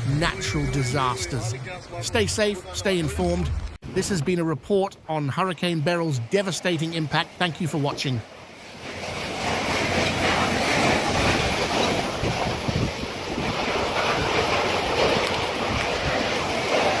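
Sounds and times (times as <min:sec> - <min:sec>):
strong wind on microphone: 0:09.0 - 0:17.0.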